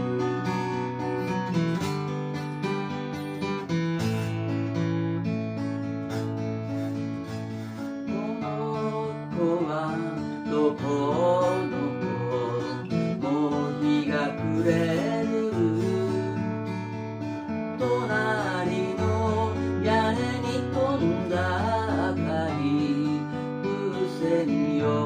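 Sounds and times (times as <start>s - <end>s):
acoustic guitar strumming: 0.0s - 25.0s.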